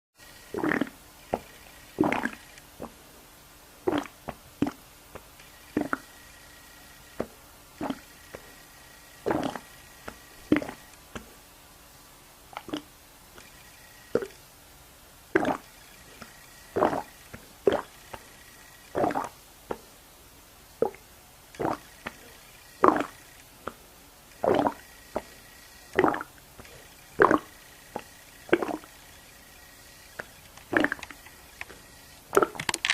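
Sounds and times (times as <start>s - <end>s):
stomach gurgling: 0.4s - 3.0s, 3.8s - 4.8s, 5.4s - 11.3s, 12.6s - 13.5s, 14.1s - 14.4s, 15.3s - 19.9s, 20.8s - 23.8s, 24.4s - 29.2s, 30.1s - 32.9s.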